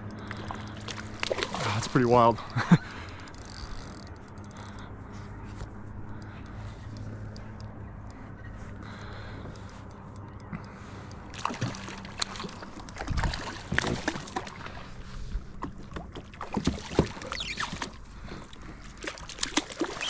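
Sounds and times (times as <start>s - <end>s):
small water splashes: 0.2s - 2.7s, 11.3s - 20.0s.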